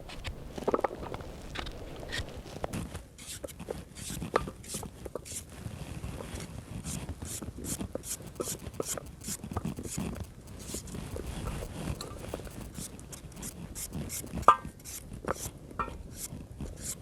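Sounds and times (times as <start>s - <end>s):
tool scraping strokes: 6.8s - 15.5s.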